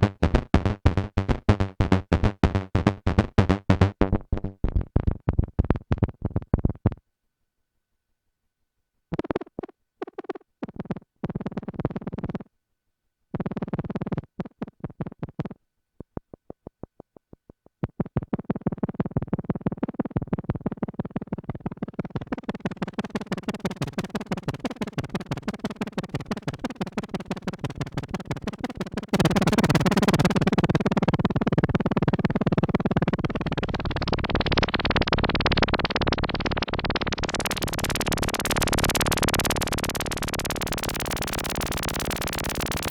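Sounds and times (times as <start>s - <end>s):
synthesizer repeated notes: 0.0s - 4.9s, 36.1s - 42.9s.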